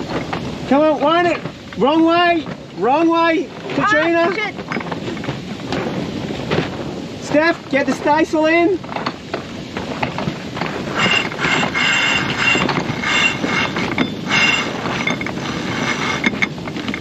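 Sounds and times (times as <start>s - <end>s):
winch pawls ratcheting: 10.0s - 17.0s
rope squealing on winch: 10.9s - 16.4s.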